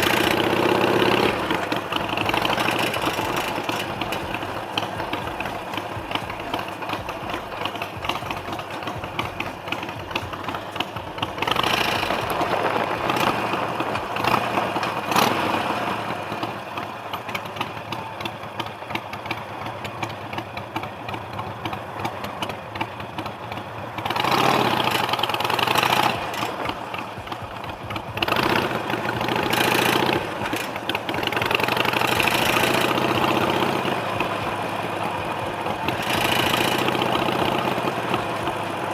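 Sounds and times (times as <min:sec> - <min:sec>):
rushing noise: 0:00.0 - 0:16.7
motorcycle engine running: 0:00.0 - 0:38.9.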